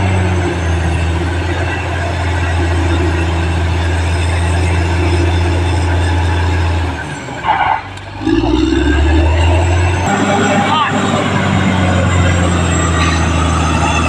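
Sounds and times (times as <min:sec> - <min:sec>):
bulldozer diesel engine running: 0:00.0 - 0:14.0.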